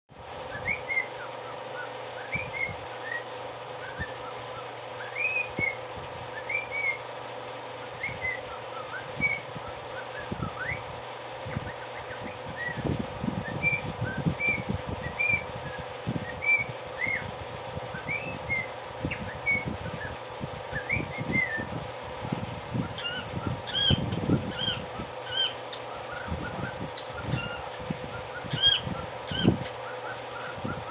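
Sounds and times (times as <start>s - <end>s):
electrical hum: 0.1s - 30.9s
small animal chirping: 22.9s - 30.9s.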